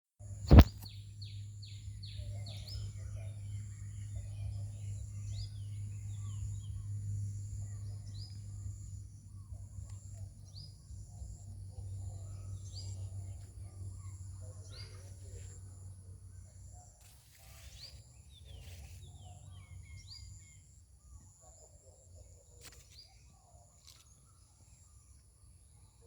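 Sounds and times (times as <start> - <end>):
sharp click: 0.5 - 0.9
bird chirping: 0.5 - 26.0.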